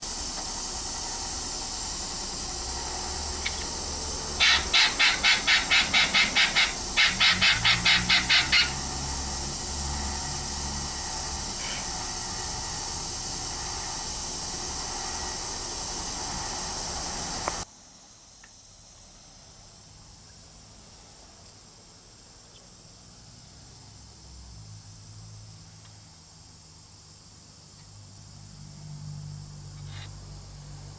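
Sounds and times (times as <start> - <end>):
running water hiss: 0.0 - 18.3
loud evenly spaced pulses: 0.6 - 17.5.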